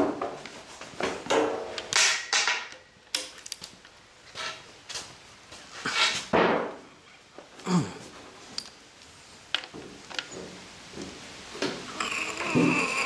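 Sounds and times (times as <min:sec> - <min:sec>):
metal tools clanking and scraping: 0:11.6 - 0:13.0.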